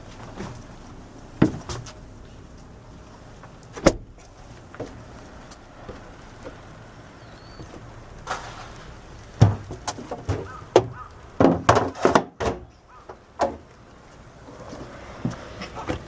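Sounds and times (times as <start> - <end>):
knocks and thumps on boat deck: 1.4 - 2.0, 9.3 - 13.7.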